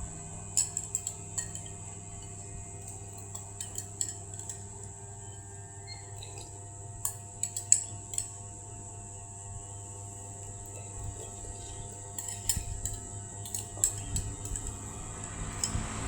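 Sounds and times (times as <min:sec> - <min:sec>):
steady background hum: 0:00.0 - 0:16.0
spoon clinking on dish: 0:00.6 - 0:04.7, 0:10.7 - 0:14.8.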